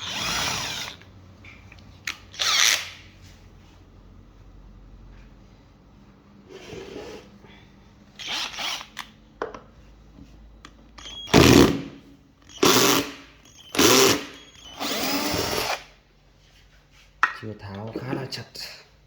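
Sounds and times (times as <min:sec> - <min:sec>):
power drill driving screws: 0:00.0 - 0:01.0, 0:02.1 - 0:03.1, 0:08.2 - 0:09.1, 0:11.0 - 0:11.9, 0:12.5 - 0:15.9.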